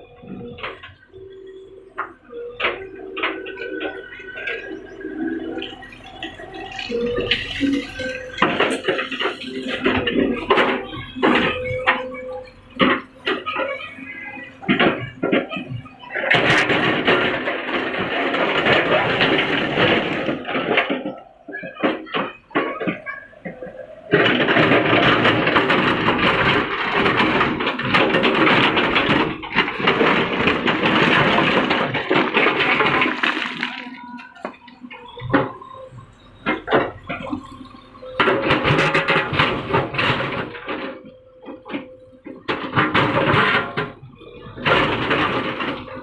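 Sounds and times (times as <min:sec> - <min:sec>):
stones clicking: 0:32.9 - 0:34.1.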